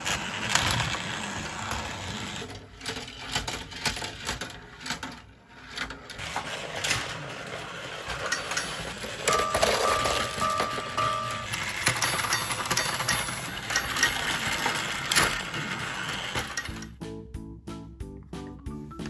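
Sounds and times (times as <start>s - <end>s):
toy train motor whirring: 0.0s - 16.9s
clicks and rattles: 2.4s - 17.0s.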